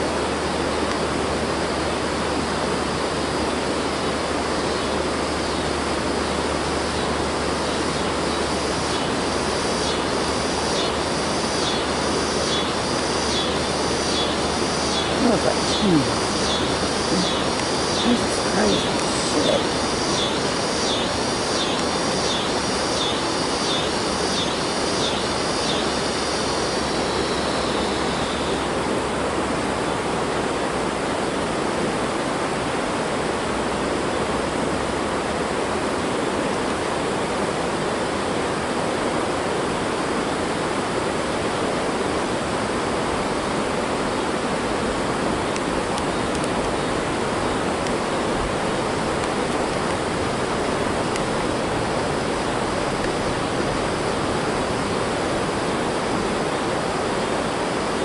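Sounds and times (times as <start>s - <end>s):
insect high pulsing call: 0.0s - 31.5s
steady rushing noise: 0.0s - 58.0s.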